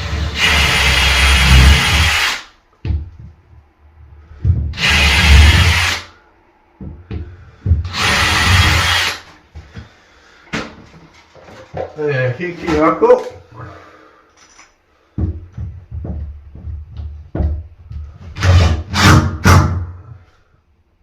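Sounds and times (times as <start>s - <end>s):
power drill boring into door: 0.0s - 2.5s, 4.8s - 6.1s, 7.9s - 9.3s.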